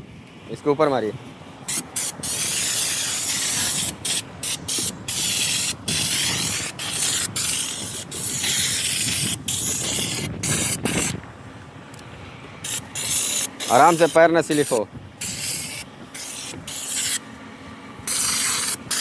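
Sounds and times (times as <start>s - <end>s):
pressurised sprayer hissing: 1.7s - 11.2s, 12.6s - 17.3s, 18.0s - 19.0s.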